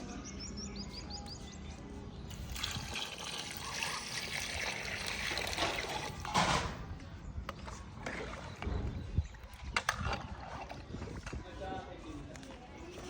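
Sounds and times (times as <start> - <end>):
water pouring and splashing: 2.3 - 6.4.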